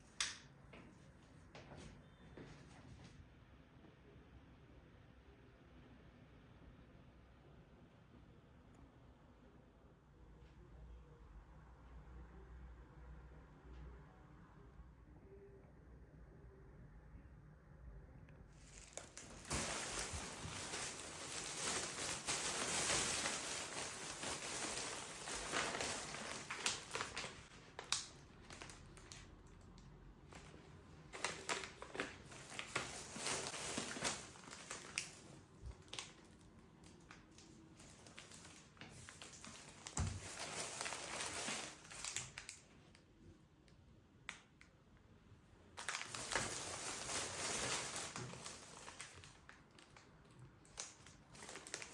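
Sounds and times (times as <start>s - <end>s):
rustling and crinkling: 18.6s - 29.3s, 30.3s - 43.0s, 45.8s - 51.9s.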